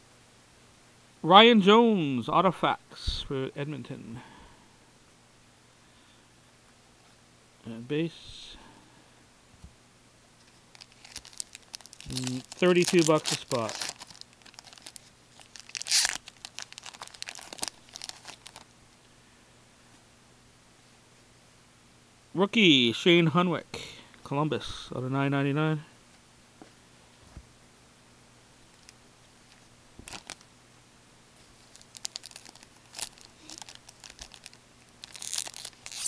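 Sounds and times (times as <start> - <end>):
foil wrapper crinkling: 10.4 - 18.7, 28.8 - 30.5, 31.4 - 36.0.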